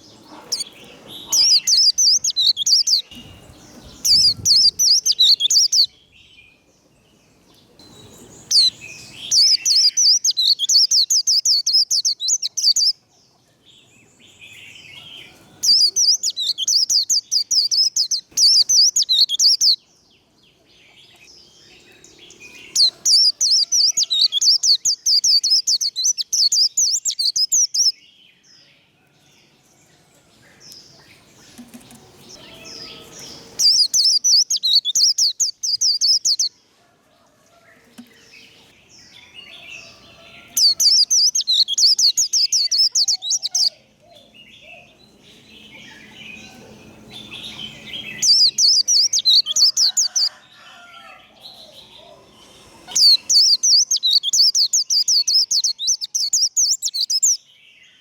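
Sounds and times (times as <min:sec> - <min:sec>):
bird twittering rapidly: 0:00.0 - 0:05.9, 0:32.4 - 0:36.5, 0:52.9 - 0:57.4.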